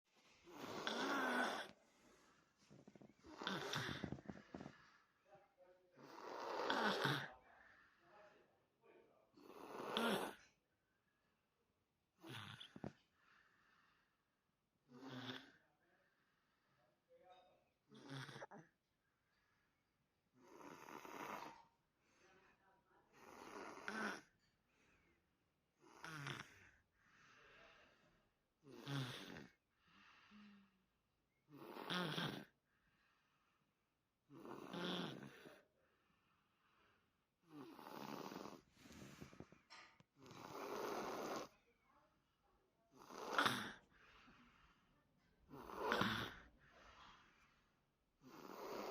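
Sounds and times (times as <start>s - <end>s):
soft breathing: 0.1s - 6.2s, 12.8s - 14.4s, 26.4s - 28.4s, 29.5s - 30.9s, 35.4s - 42.0s, 43.3s - 48.0s
child snoring: 0.5s - 1.8s, 2.9s - 4.8s, 6.0s - 7.3s, 9.4s - 10.5s, 12.2s - 13.0s, 14.9s - 15.6s, 17.9s - 18.6s, 20.4s - 21.6s, 23.2s - 24.4s, 25.8s - 26.6s, 28.6s - 29.6s, 31.5s - 32.6s, 34.3s - 35.6s, 37.5s - 39.4s, 40.2s - 41.6s, 42.9s - 43.9s, 45.5s - 46.6s, 48.2s - 48.9s.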